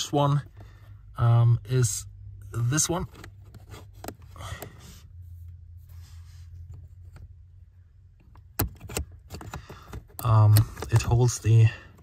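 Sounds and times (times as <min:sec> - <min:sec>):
short scraping rubs: 0:03.3 - 0:07.1.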